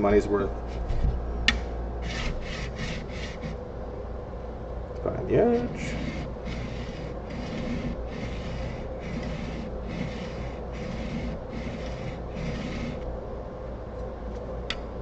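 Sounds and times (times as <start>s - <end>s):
blade scraping on sharpening block: 2.0s - 3.6s, 5.7s - 13.0s.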